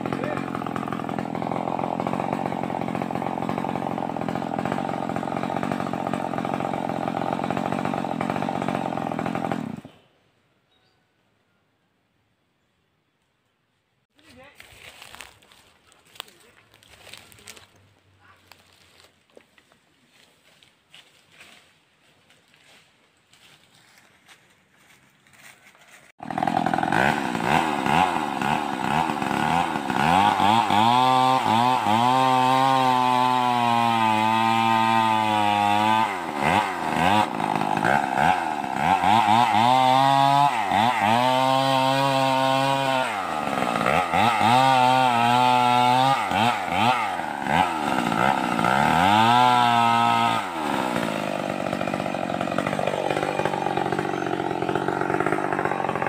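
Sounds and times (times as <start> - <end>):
chainsaw engine revving: 0.0 - 10.0, 26.1 - 56.0.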